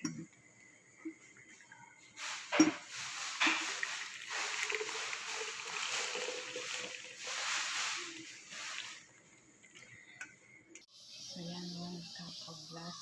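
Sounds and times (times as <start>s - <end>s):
tea pouring into a glass: 2.8s - 9.1s.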